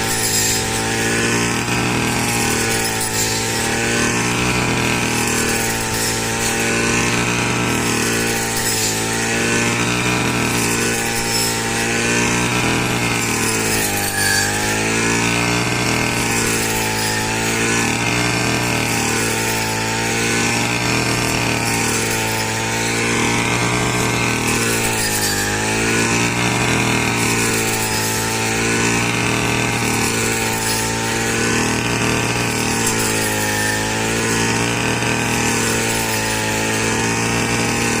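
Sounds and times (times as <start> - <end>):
small engine running: 0.0 - 38.0.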